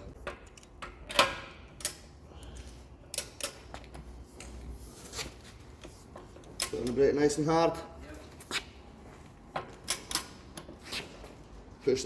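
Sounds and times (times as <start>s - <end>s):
tools clicking and knocking: 0.1s - 4.6s, 5.8s - 7.0s, 9.5s - 10.8s.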